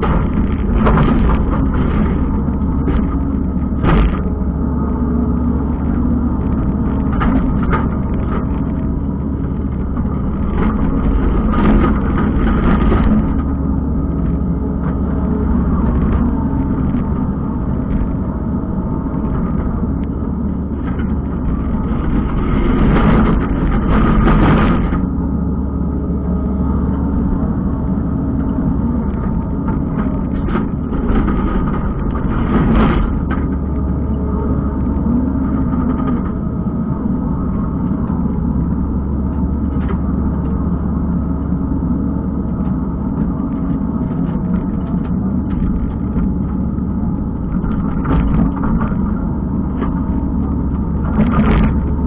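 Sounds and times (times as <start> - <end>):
diesel engine running: 0.0 - 52.0.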